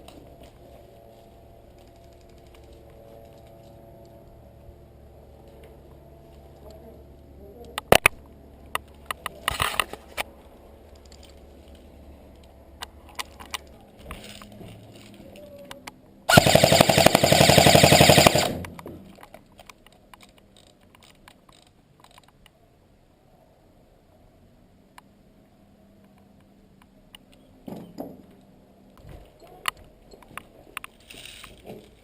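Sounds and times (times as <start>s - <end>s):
airsoft gun firing full auto: 16.3s - 18.8s.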